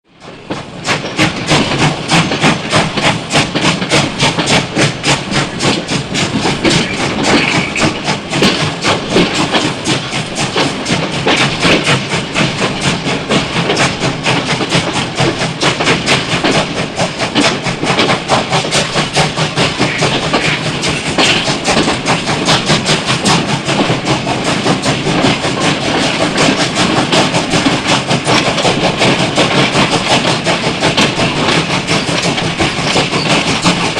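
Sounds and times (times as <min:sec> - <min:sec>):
steam train beats: 0:00.1 - 0:33.9.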